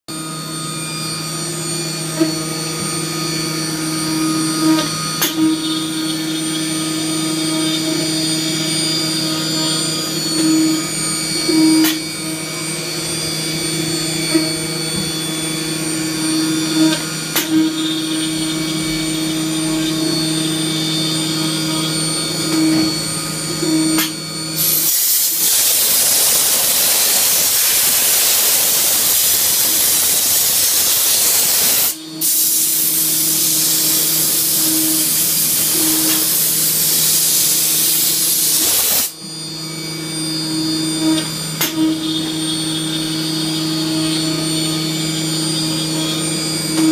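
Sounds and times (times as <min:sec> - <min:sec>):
milling machine hum whining: 0:00.1 - 0:46.9
loud hiss: 0:24.6 - 0:34.5.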